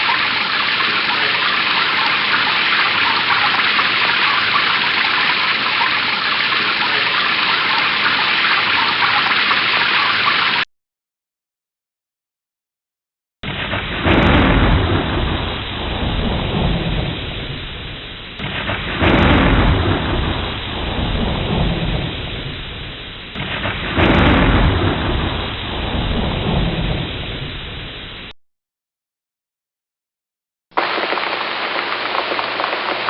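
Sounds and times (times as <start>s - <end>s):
heavy rain: 0.0s - 10.6s, 13.4s - 28.3s, 30.7s - 33.0s
deep rolls of thunder: 13.4s - 28.3s.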